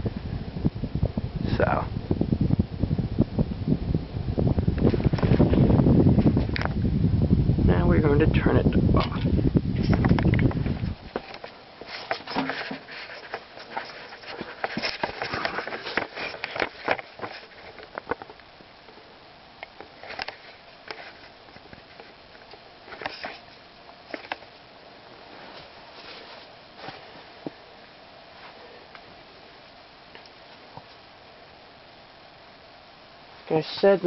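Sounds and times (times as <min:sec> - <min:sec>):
ceiling fan clicking: 0:04.4 - 0:07.1, 0:08.6 - 0:24.6.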